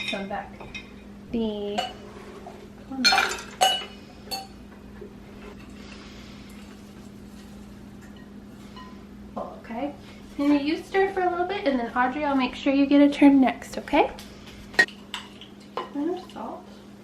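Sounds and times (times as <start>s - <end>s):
dishes clinking: 0.0s - 4.6s.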